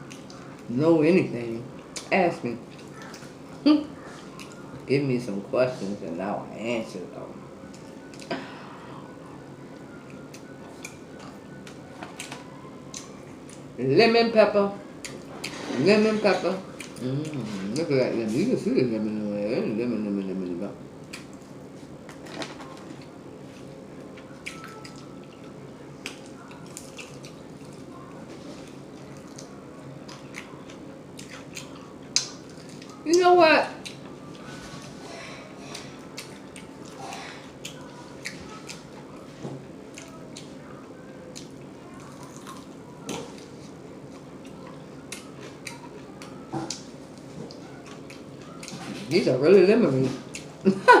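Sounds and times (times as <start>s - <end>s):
chewing and lip-smacking: 0.0s - 0.7s, 1.7s - 4.9s, 7.6s - 8.3s, 9.4s - 13.7s, 15.0s - 15.5s, 16.6s - 17.9s, 21.0s - 33.2s, 33.8s - 49.2s, 50.0s - 50.6s
wet mouth smacking and chewing: 24.4s - 27.8s, 28.6s - 33.0s.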